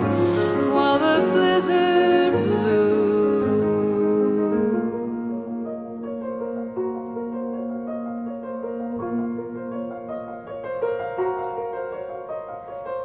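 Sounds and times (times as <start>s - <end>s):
piano playing folk ballad: 0.0s - 13.0s.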